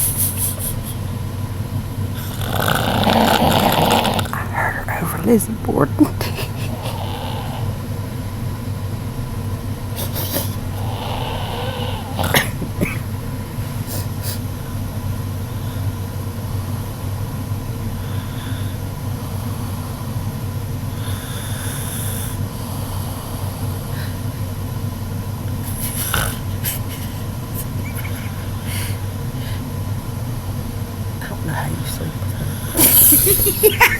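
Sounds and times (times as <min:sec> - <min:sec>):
steady low hum: 0:00.0 - 0:33.9
girl snoring: 0:02.2 - 0:05.4, 0:06.2 - 0:07.9, 0:10.0 - 0:13.1, 0:20.9 - 0:24.2, 0:25.6 - 0:29.1, 0:31.4 - 0:33.7.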